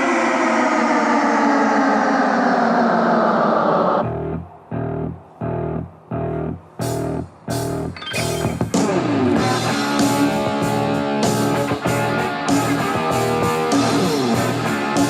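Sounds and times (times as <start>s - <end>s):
rock band with guitar and drums: 4.2s - 15.0s.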